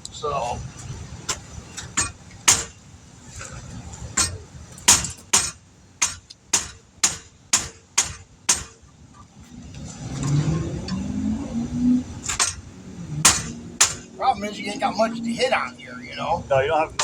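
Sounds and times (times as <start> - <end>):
hammer striking metal: 1.9 - 2.8, 4.2 - 8.8, 12.2 - 14.2.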